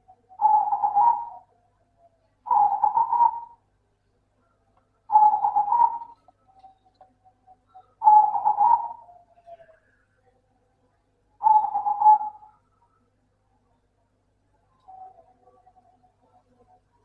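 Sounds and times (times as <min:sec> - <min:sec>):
dove cooing: 0:00.0 - 0:01.6, 0:02.4 - 0:03.6, 0:05.1 - 0:06.4, 0:07.5 - 0:10.0, 0:11.4 - 0:12.9.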